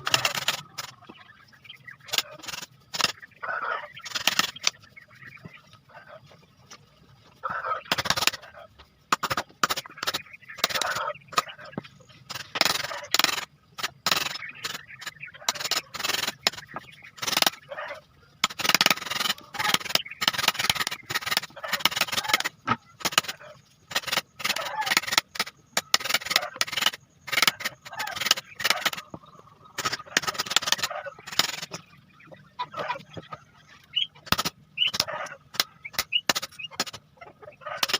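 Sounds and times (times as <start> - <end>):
hand tool scraping wood: 0.0 - 0.9, 2.0 - 3.2, 4.0 - 4.9, 9.1 - 11.6, 12.2 - 17.6, 18.4 - 29.2, 29.8 - 31.8.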